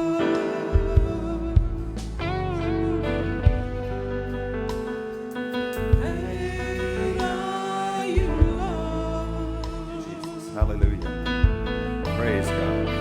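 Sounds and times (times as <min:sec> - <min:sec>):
person singing long notes: 0:00.0 - 0:04.9, 0:05.9 - 0:11.0
slow gospel worship music: 0:00.0 - 0:13.0.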